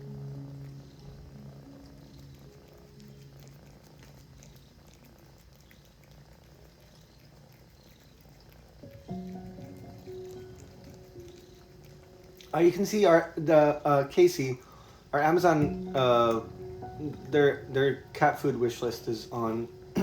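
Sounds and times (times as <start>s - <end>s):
cat purring: 0.0s - 20.0s.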